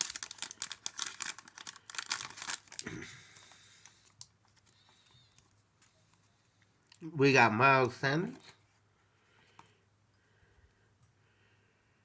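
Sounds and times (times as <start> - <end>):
plastic packaging crinkling: 0.0 - 6.3.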